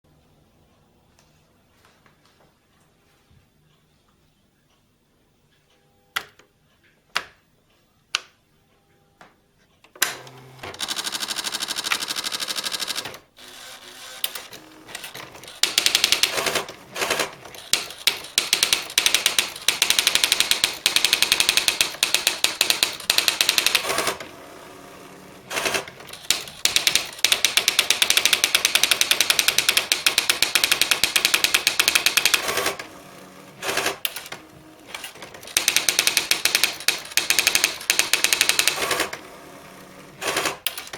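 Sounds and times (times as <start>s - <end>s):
typewriter clicks: 10.0s - 13.2s, 14.2s - 24.3s, 25.5s - 32.9s, 33.7s - 39.2s, 40.2s - 40.9s
electronic typewriter typing: 10.0s - 40.9s.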